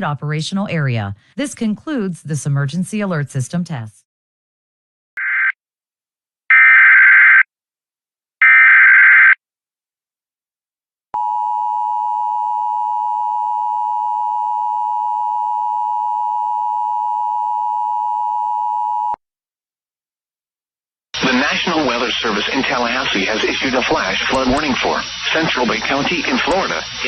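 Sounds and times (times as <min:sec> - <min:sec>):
digital data tone bursts: 0:21.3 - 0:27.0.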